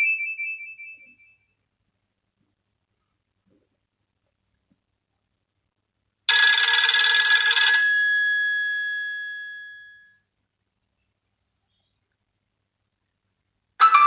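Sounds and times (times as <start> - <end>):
bell-like phone ringtone: 6.3 - 10.2, 13.8 - 14.0.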